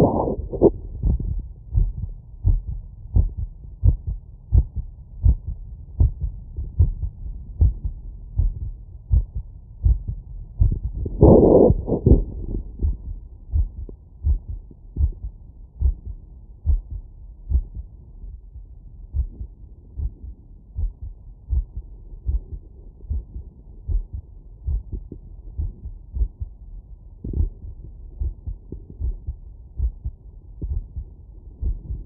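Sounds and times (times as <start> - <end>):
rush of noise: 0.0 - 1.0, 11.0 - 13.0
heartbeat through stethoscope: 0.0 - 32.0.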